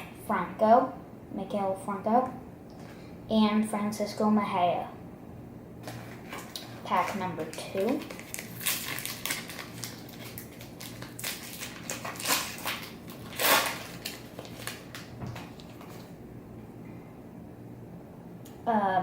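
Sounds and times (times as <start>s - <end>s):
foil wrapper crinkling and tearing: 5.8s - 16.0s.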